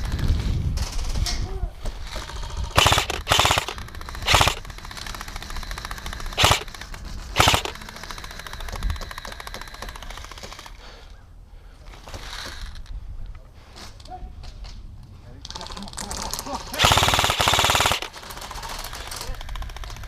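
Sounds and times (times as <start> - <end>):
faint rapid gunfire rattling: 2.2 - 10.8, 16.8 - 20.0
electric toy gun full-auto bursts: 2.6 - 6.8, 7.4 - 10.7, 16.8 - 18.4.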